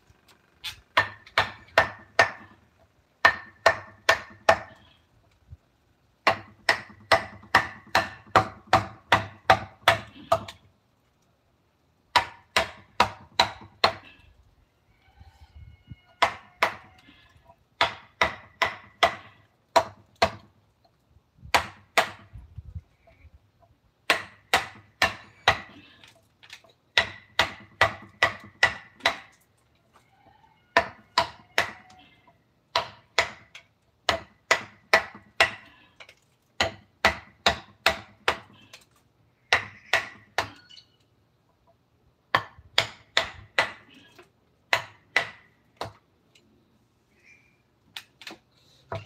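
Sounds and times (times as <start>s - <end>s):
mallet striking chisel into wood: 1.0s - 2.6s, 3.2s - 4.8s, 6.2s - 10.6s, 12.1s - 14.0s, 16.2s - 16.9s, 17.8s - 20.4s, 21.5s - 22.3s, 24.1s - 25.7s, 27.0s - 29.3s, 32.7s - 35.6s, 36.6s - 38.5s, 42.3s - 43.8s, 44.7s - 46.0s.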